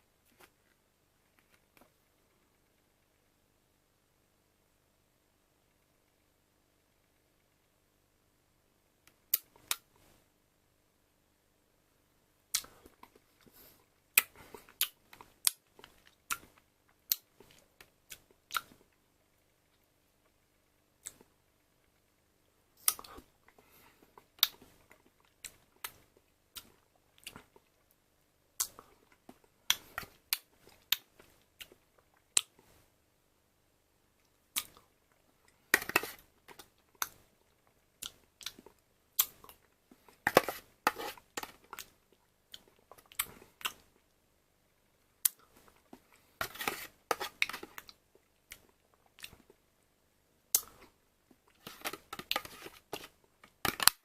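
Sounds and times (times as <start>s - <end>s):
eating clicks and smacks: 12.5s - 13.2s, 14.1s - 19.0s, 34.5s - 35.2s.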